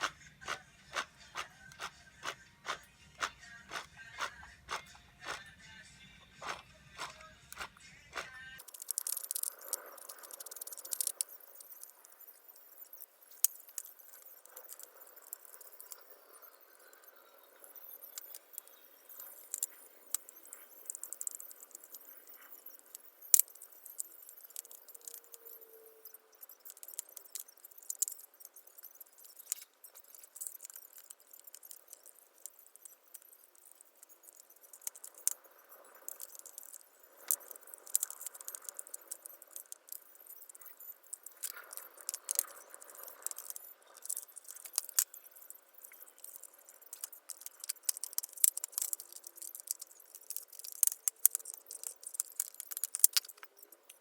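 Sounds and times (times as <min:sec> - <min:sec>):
jigsaw parts clicking and rattling: 0:06.4 - 0:54.0.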